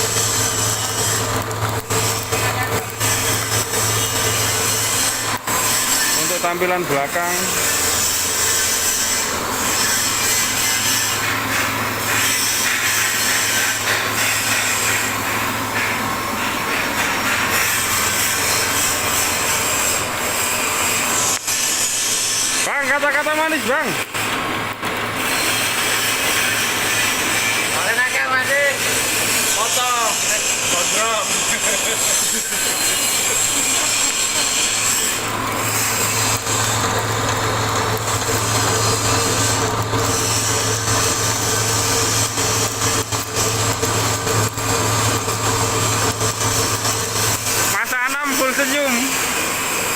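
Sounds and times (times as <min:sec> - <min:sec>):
motor hum: 0:00.0 - 0:12.2, 0:23.4 - 0:47.8
machine grinding with high squeal: 0:00.0 - 0:49.9.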